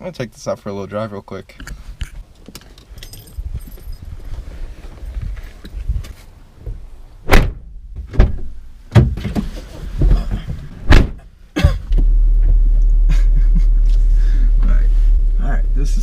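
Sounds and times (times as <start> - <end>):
car engine rumbling: 0.0 - 16.0
car door knocks and thumps: 6.6 - 12.6.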